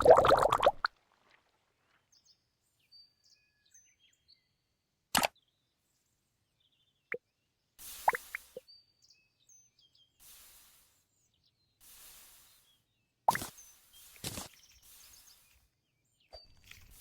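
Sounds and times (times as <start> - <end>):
faint bird chirps: 2.1 - 4.6, 5.3 - 17.0
small click: 5.1 - 5.4
soft rustle: 11.8 - 15.8
squishy toy popping: 13.3 - 13.5.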